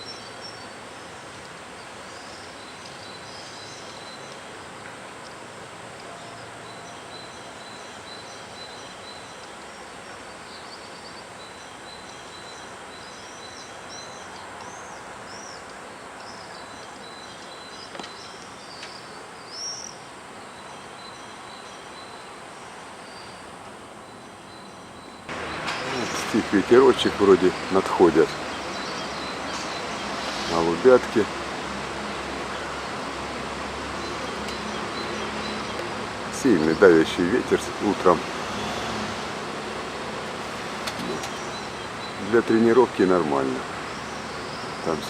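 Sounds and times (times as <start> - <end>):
small birds chirping: 0.0 - 4.5, 6.2 - 22.4, 23.0 - 38.3, 39.4 - 45.0
steady hiss: 25.3 - 45.0.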